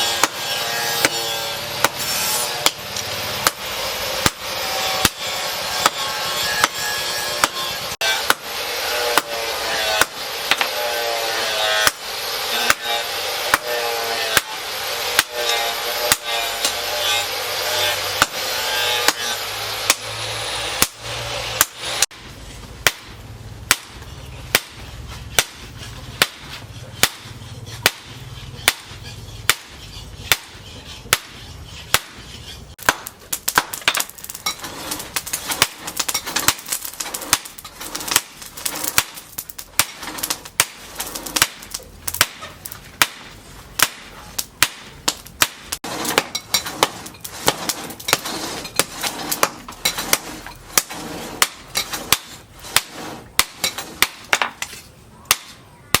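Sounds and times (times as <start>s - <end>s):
hammer striking steel on anvil: 0.0s - 39.2s.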